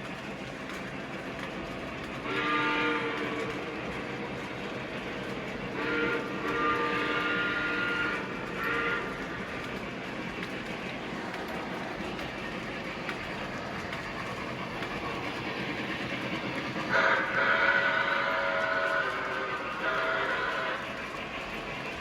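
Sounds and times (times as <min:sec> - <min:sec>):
model train running: 0:00.0 - 0:22.0
model train horn blasts: 0:02.2 - 0:03.8, 0:05.7 - 0:09.3, 0:16.9 - 0:20.9.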